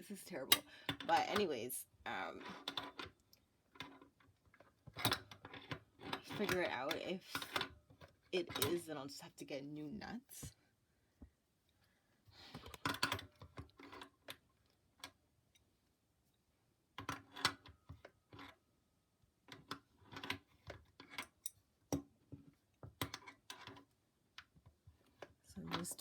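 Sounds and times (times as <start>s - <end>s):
metal bolts and nuts rattling: 8.4s - 9.0s.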